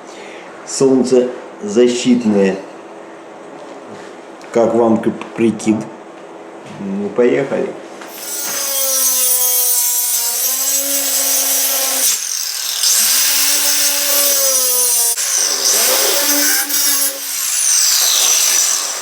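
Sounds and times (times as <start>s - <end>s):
angle grinder cutting drywall: 8.1s - 19.0s.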